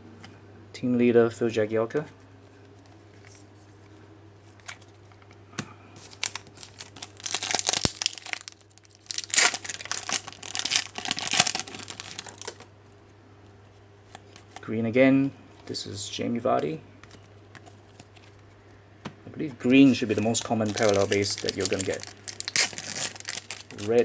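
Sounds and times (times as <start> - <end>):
foil wrapper tearing and crinkling: 6.0 - 12.7, 19.9 - 24.0.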